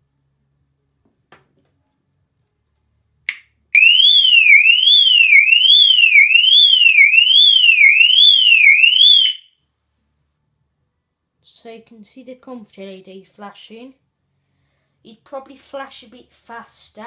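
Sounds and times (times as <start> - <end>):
burglar alarm siren sweeping: 3.8 - 9.6.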